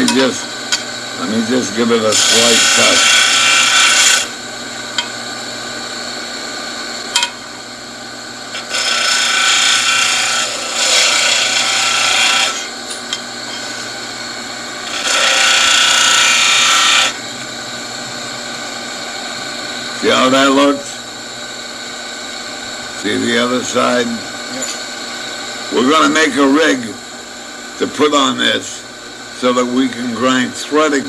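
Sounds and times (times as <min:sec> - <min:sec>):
tool bit grinding on disc: 0:00.0 - 0:05.2, 0:08.5 - 0:17.3
disc sander running: 0:00.0 - 0:31.0.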